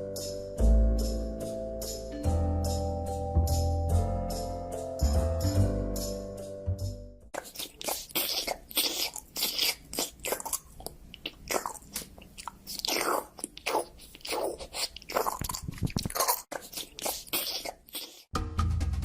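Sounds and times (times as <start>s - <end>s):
parrot crunching with its beak: 7.4s - 18.3s.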